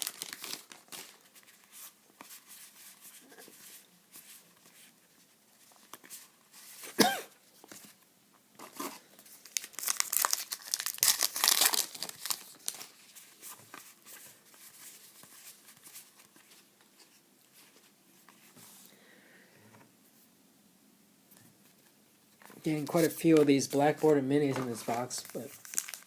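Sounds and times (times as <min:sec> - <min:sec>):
wrapper tearing and crinkling: 0:00.0 - 0:01.2, 0:09.4 - 0:13.0, 0:24.6 - 0:26.0.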